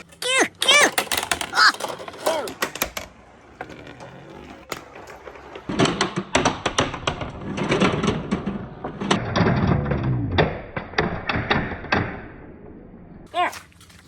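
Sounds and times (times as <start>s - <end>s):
marbles clattering down wooden ramps: 0.1s - 10.2s.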